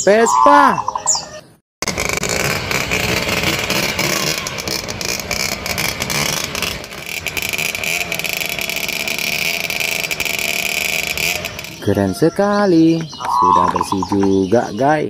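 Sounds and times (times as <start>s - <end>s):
motor scooter engine revving: 1.8s - 12.2s.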